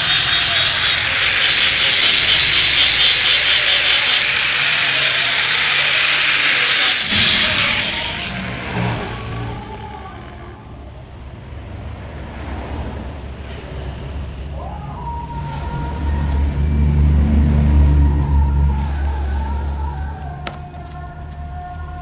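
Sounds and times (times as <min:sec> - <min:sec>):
steady high whine: 0:00.0 - 0:11.6
vehicle engine running: 0:00.0 - 0:14.4, 0:15.4 - 0:22.0.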